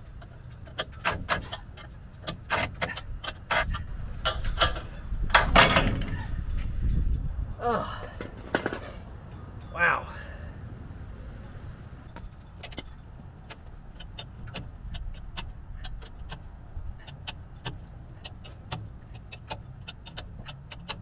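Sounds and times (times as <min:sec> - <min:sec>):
metallic clicks and clinks of tools: 0:02.5 - 0:06.3.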